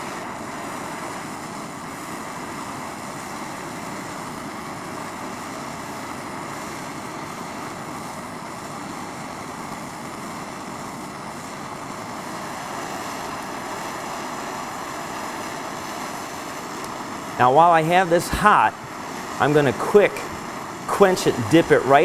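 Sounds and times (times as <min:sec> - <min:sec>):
blowtorch flame hissing: 0:00.0 - 0:22.0.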